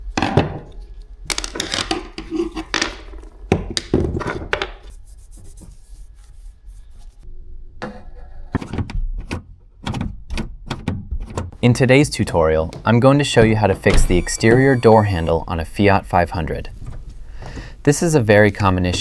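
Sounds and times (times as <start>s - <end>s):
rubbing: 0.0s - 7.2s, 14.4s - 19.0s
clicks and knocks: 0.1s - 4.9s.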